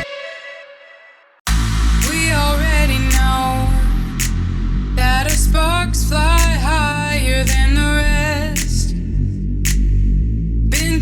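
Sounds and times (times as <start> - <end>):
cymbal-like hit: 1.5 - 6.6
electro house music: 1.5 - 8.9.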